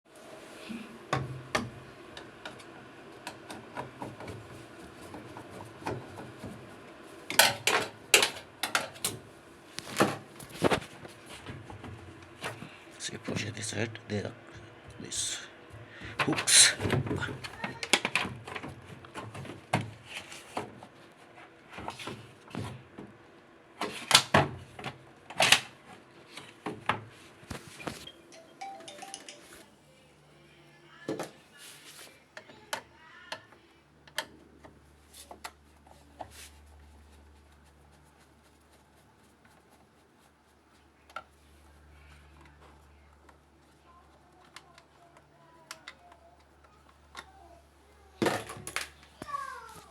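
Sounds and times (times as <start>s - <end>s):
faint low hum: 28.0s - 49.9s.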